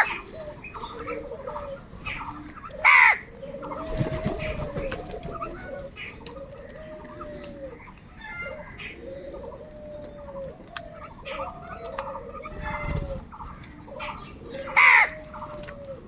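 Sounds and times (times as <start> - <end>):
crow cawing: 0.0 - 0.2, 2.8 - 3.3, 14.7 - 15.3
drawn-out low bird calls: 0.0 - 16.0.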